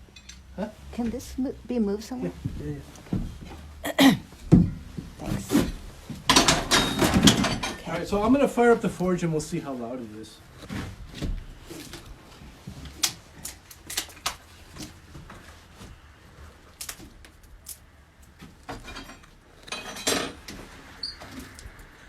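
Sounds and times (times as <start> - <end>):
metal tools clinking: 0.0 - 0.6, 5.6 - 9.0, 18.6 - 21.2
scraping rustle: 0.1 - 22.0.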